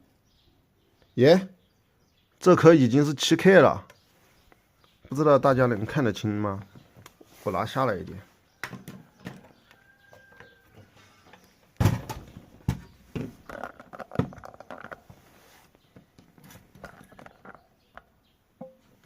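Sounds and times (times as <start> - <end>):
knocks and rattles on workbench: 8.6 - 15.0.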